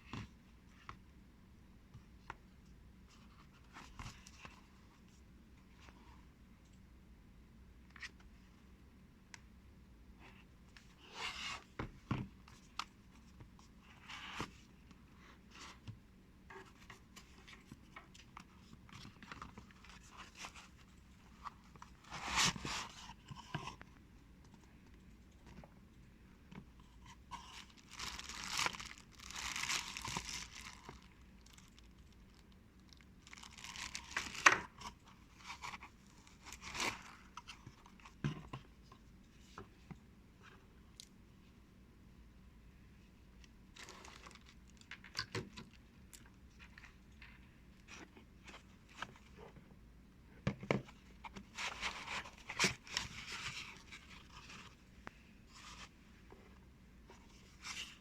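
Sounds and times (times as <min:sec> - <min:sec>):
packaging crinkling and tearing: 0:27.4 - 0:32.4, 0:33.2 - 0:34.6.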